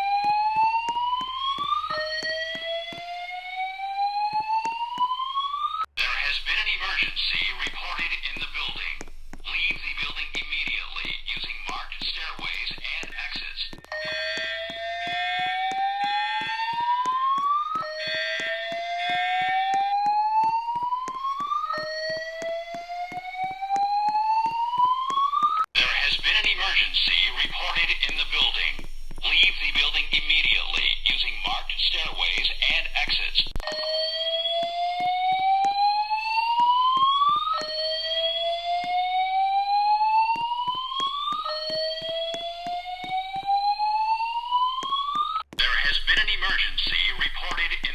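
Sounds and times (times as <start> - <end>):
fire alarm whoop tone: 0.0 - 45.5
spoken announcements: 6.0 - 20.9, 25.8 - 33.8, 45.6 - 47.9.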